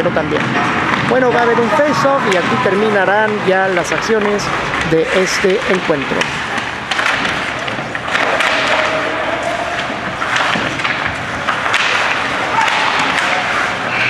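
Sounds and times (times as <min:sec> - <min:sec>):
hockey sticks and puck knocking: 0:00.0 - 0:14.0
skates scraping ice: 0:03.3 - 0:14.0.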